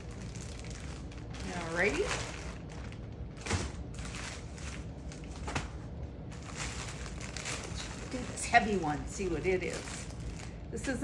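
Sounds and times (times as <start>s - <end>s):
plastic and cardboard rustling: 0.0s - 11.0s
light knocks of packages: 3.4s - 5.9s.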